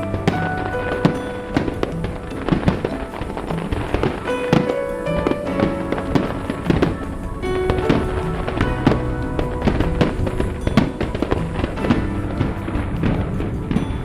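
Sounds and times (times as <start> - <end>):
fireworks bangs and crackles: 0.0 - 14.0
music with long held notes: 0.0 - 14.0.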